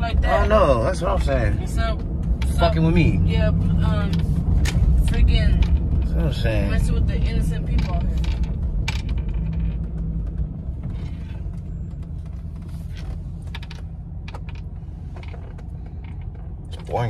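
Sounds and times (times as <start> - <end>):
low rumble inside truck cabin: 0.0 - 17.0
light clicks and creaks: 3.5 - 17.0.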